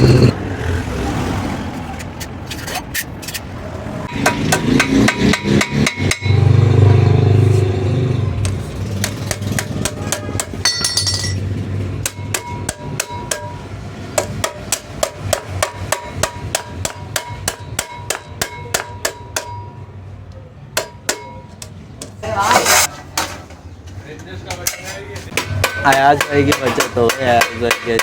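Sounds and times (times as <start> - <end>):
hammer tapping on sheet metal: 4.1 - 6.5, 8.4 - 11.4, 12.0 - 19.8, 20.8 - 22.2, 24.6 - 28.0.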